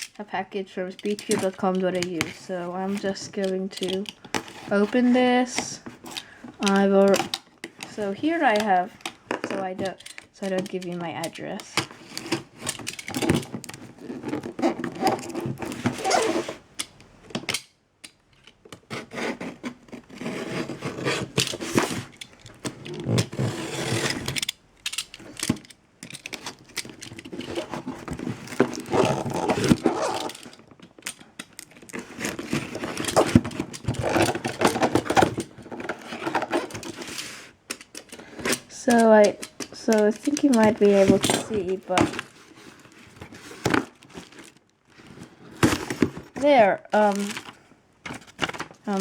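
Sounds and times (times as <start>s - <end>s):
packaging rustling and scraping: 0.8s - 17.5s, 18.4s - 49.0s
packaging sharp clicks: 24.0s - 37.0s, 37.6s - 44.6s.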